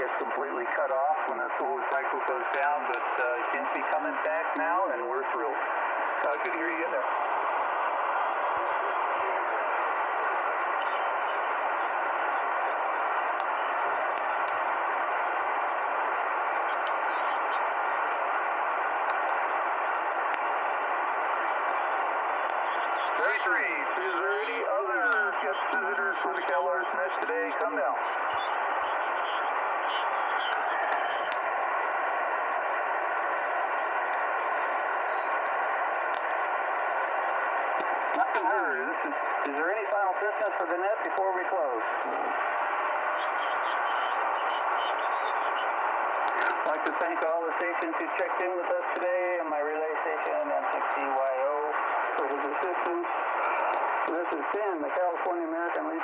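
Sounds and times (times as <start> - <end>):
radio static hiss: 0.0 - 56.0
faint radio clicks: 0.1 - 4.2, 13.3 - 14.7, 16.7 - 17.1, 19.0 - 19.5, 20.2 - 20.6, 24.0 - 26.5, 30.3 - 31.6, 35.0 - 36.5, 37.7 - 40.0, 43.8 - 49.3, 51.8 - 55.9.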